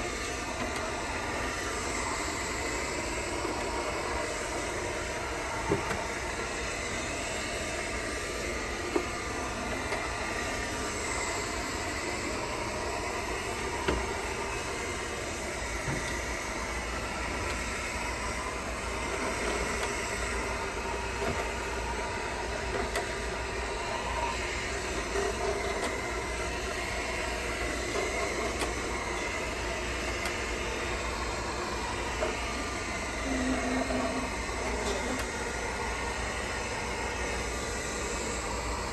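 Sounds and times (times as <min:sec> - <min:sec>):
robot vacuum running: 0:00.0 - 0:38.9.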